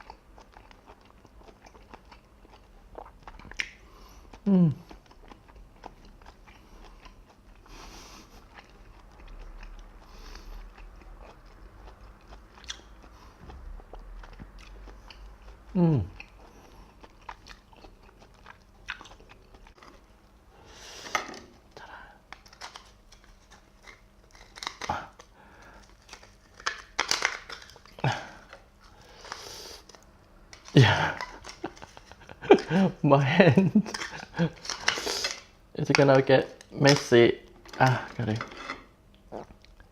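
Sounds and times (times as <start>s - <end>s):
chewing wet mouth sounds: 0.0s - 20.1s.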